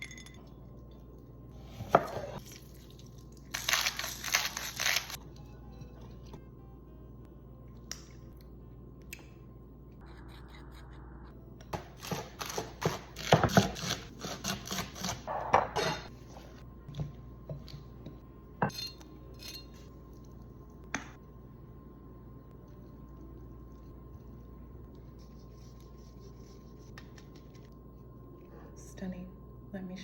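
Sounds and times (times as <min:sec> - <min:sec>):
utensils and dishes clinking: 0:15.5 - 0:16.1.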